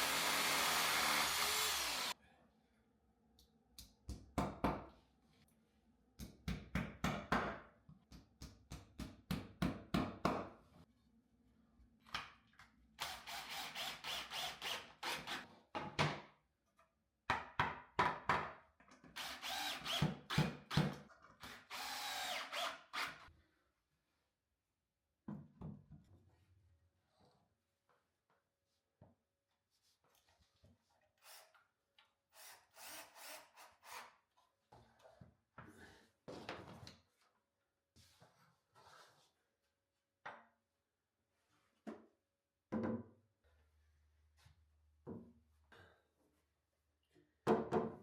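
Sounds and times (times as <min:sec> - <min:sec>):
power drill whirring: 0:00.0 - 0:02.2, 0:13.0 - 0:15.4, 0:19.2 - 0:20.0, 0:21.6 - 0:23.3.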